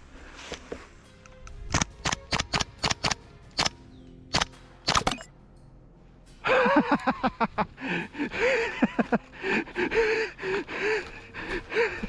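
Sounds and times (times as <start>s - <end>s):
man gasping and breathing hard: 7.8s - 12.0s.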